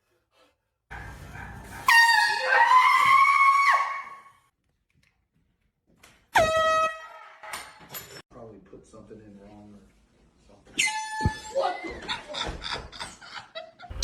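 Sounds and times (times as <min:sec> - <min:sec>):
air horn blasts: 0:01.8 - 0:02.7, 0:06.4 - 0:07.2.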